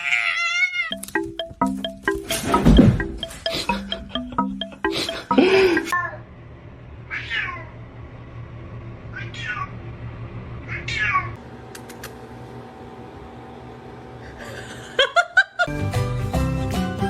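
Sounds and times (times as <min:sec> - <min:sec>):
cat meowing: 0:00.0 - 0:00.9.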